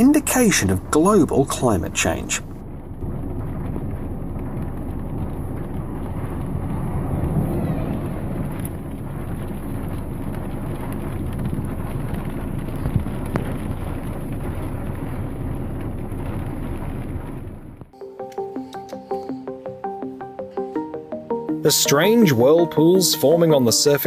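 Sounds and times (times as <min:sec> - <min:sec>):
rain: 0:00.0 - 0:18.0
strong wind buffeting microphone: 0:00.3 - 0:17.9
plucked music: 0:18.0 - 0:24.0.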